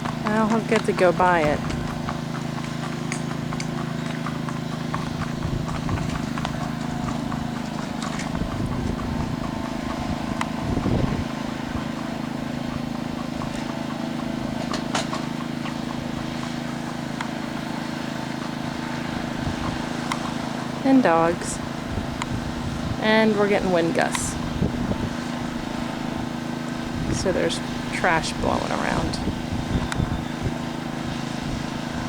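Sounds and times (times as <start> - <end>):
horse hooves clip-clopping: 0.0 - 32.0
lawn mower engine humming: 0.0 - 32.0
wind on microphone: 5.1 - 6.3, 8.2 - 11.9, 19.1 - 20.0, 21.0 - 32.0.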